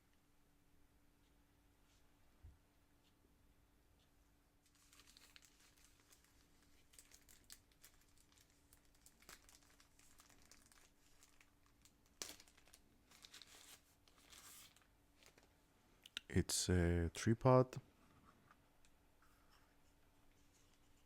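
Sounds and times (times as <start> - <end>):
packaging crinkling and rustling: 4.6 - 15.5.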